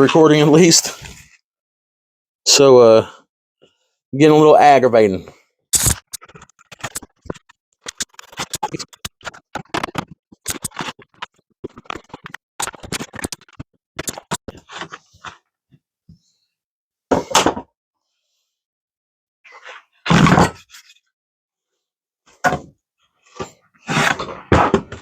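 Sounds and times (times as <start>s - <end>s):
hand tool scraping wood: 5.8s - 15.1s.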